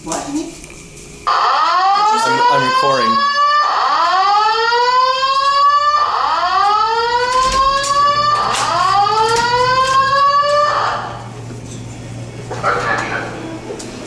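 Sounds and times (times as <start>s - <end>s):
fire alarm whoop tone: 1.3s - 11.2s.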